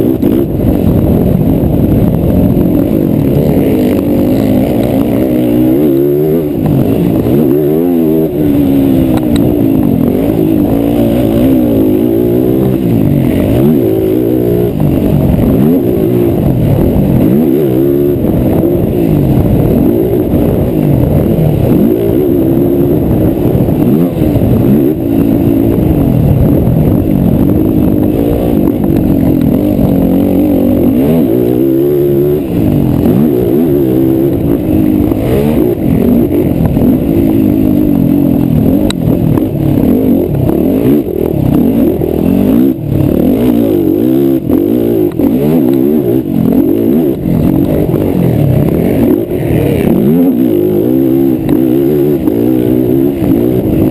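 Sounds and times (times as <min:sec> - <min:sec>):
race quad engines revving: 0:00.0 - 0:53.9.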